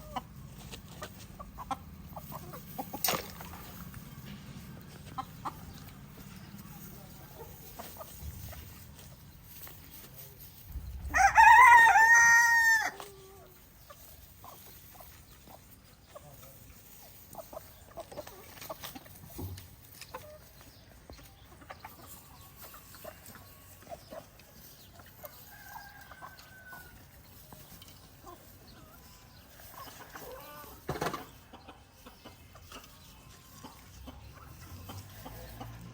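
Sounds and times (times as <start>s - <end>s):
chickens clucking: 0.0s - 35.9s
rooster crowing: 11.1s - 13.0s.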